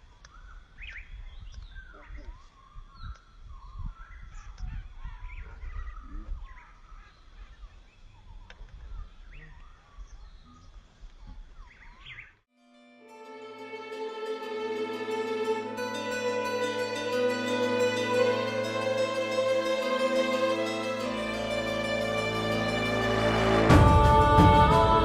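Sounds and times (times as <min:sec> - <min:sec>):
birds chirping and calling: 0:00.3 - 0:12.4.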